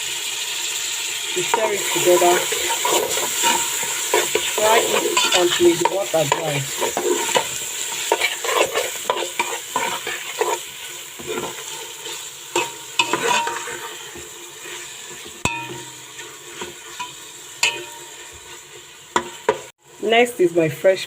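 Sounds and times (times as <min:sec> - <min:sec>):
tomatoes sizzling in oil: 0:00.0 - 0:21.0
spoon stirring and scraping: 0:01.4 - 0:19.7
spoon knocking on pot: 0:15.4 - 0:16.0.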